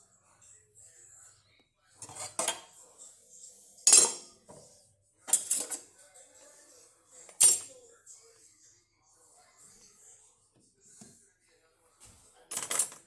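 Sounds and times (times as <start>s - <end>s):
dishes and cutlery clattering: 2.0s - 2.8s, 3.8s - 4.7s, 5.3s - 5.9s, 7.2s - 7.8s, 12.5s - 13.0s.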